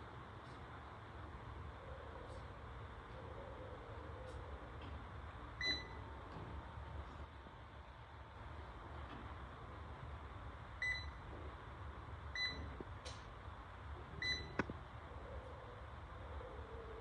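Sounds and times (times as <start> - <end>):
low background hum: 0.0 - 17.0
short electronic beeps: 14.2 - 14.6.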